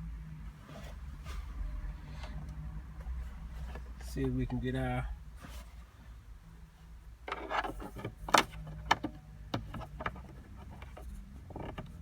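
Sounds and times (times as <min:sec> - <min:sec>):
plastic trim clicks and knocks: 0:07.3 - 0:12.0.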